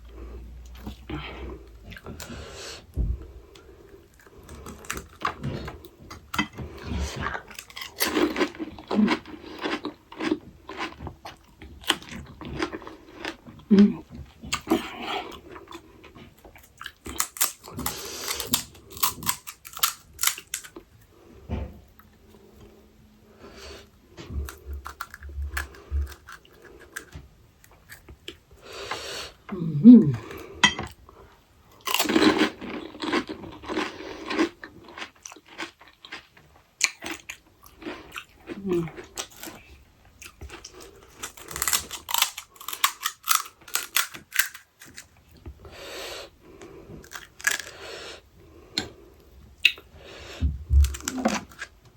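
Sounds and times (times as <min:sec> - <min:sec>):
crisp shells crunching: 0:40.5 - 0:45.1, 0:47.0 - 0:47.8, 0:50.8 - 0:51.8.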